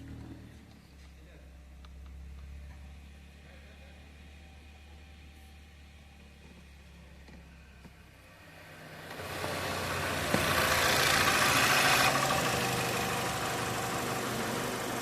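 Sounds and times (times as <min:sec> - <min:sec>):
car engine starting and idling: 0:04.1 - 0:15.0.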